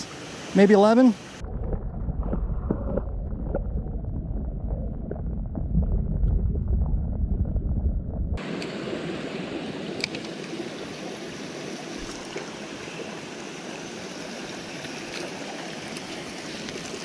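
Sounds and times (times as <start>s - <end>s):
wind rumble on microphone: 1.4s - 8.4s
mountain stream running: 8.4s - 17.0s.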